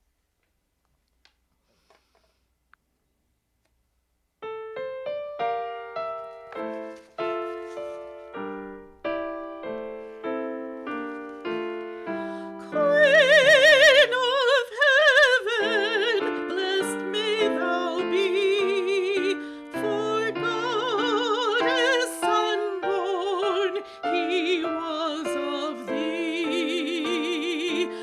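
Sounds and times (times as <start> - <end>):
piano chords: 4.4 - 28.0
classical voice singing: 11.1 - 28.0.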